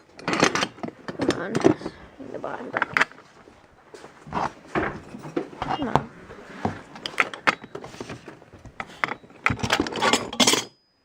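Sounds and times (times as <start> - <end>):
metal hardware clinking: 0.0 - 1.9, 6.9 - 10.8.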